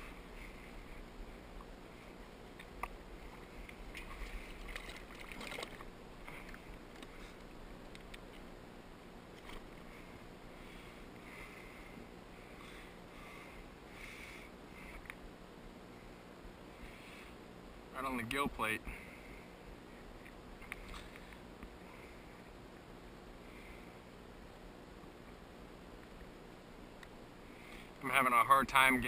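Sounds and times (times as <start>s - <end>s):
water lapping against boat hull: 2.5s - 8.5s.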